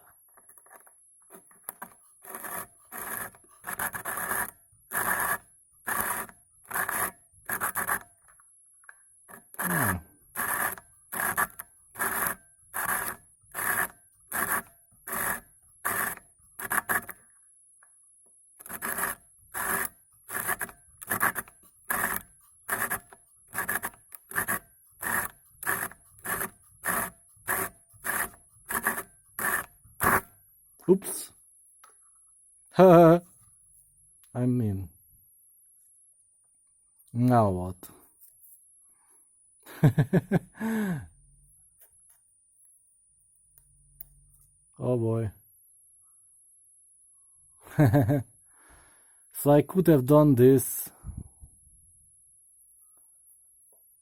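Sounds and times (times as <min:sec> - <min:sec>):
abrasive tool grinding glass: 0:02.2 - 0:08.0, 0:09.4 - 0:17.1, 0:18.6 - 0:30.3.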